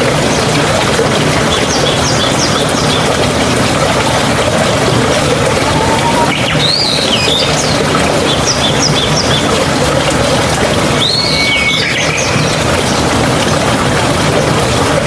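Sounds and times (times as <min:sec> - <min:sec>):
mountain stream rushing: 0:00.0 - 0:15.0
bird whistling: 0:05.6 - 0:07.8, 0:11.0 - 0:12.4.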